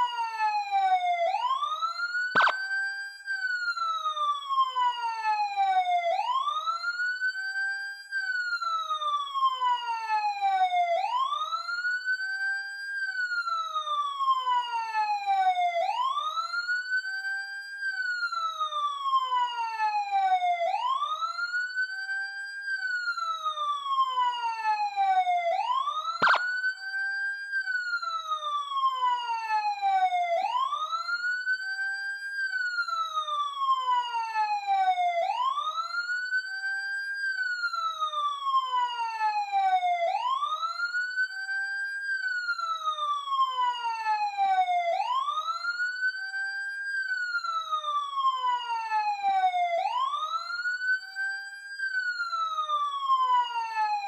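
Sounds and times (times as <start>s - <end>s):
police siren wailing: 0.0s - 54.0s
sharp click: 26.2s - 26.6s.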